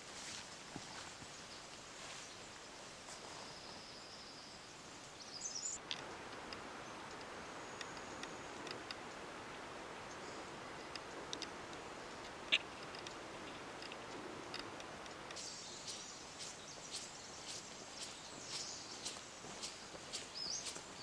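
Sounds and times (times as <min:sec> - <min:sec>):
footsteps: 0:00.0 - 0:02.3, 0:15.8 - 0:21.0
faint ticks: 0:05.8 - 0:09.3, 0:10.8 - 0:20.9.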